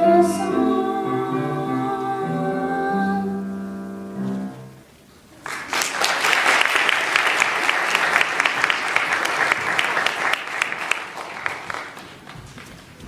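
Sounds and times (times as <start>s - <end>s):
audience applauding: 5.4s - 12.6s.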